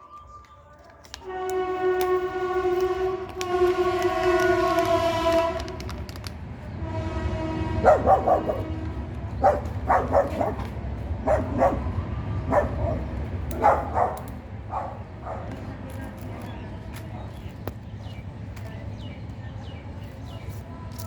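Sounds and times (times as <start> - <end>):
dog barking: 7.8 - 8.8, 9.4 - 15.7.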